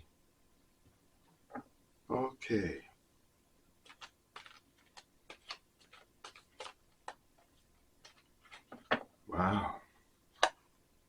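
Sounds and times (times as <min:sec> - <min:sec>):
cards being shuffled and flipped: 0:03.8 - 0:09.0.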